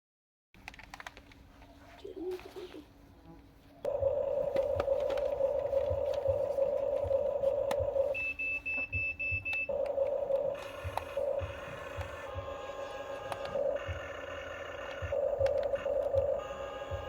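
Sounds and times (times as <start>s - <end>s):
small electric motor whining: 9.7s - 17.0s.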